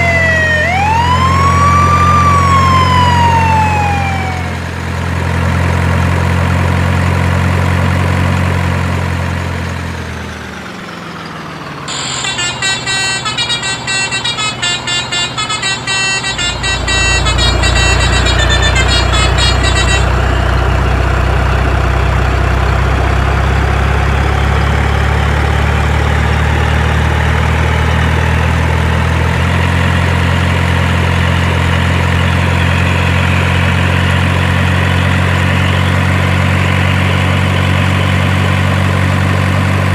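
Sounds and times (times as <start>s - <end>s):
multi-tone truck horn tune: 0.0s - 4.6s, 11.9s - 24.8s
truck engine rumble: 0.0s - 39.9s.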